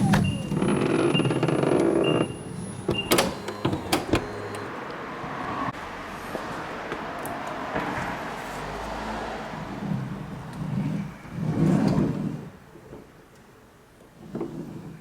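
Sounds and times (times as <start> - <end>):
sliding door warning beep: 0.0 - 4.7.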